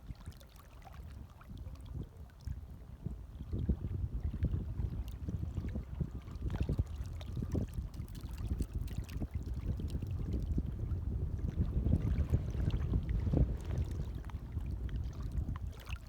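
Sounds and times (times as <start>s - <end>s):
small water splashes: 5.0s - 10.5s, 11.4s - 16.0s
water waves lapping: 11.4s - 16.0s.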